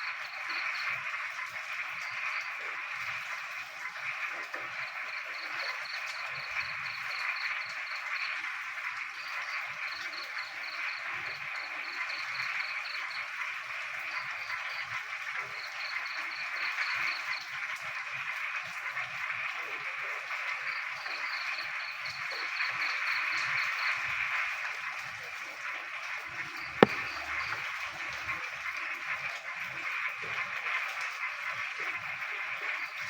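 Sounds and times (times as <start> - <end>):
sharp tap: 26.8 - 27.2
high pulsed frog call: 26.8 - 27.5.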